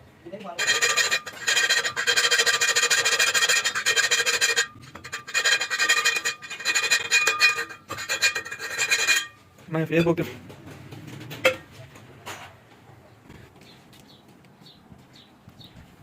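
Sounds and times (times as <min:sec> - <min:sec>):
metal filing scraping: 0:00.6 - 0:10.3.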